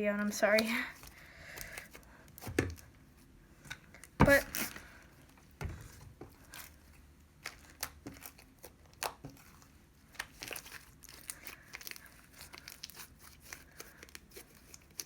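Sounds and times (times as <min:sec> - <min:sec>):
slime crackling as kneaded: 0:04.0 - 0:15.0.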